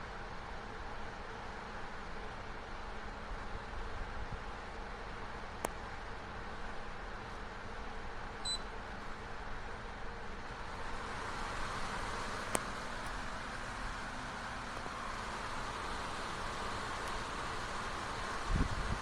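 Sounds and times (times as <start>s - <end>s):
air conditioner fan running: 0.0s - 19.0s
short electronic beep: 8.4s - 8.7s.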